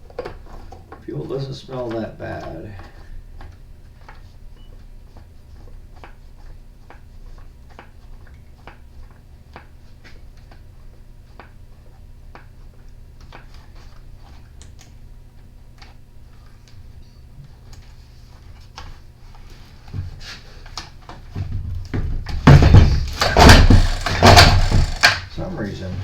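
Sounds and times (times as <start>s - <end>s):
steady low hum: 22.6s - 26.0s.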